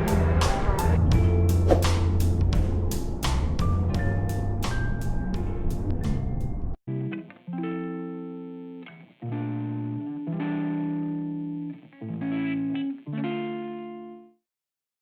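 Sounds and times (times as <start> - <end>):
background music of held chords: 0.0 - 6.8.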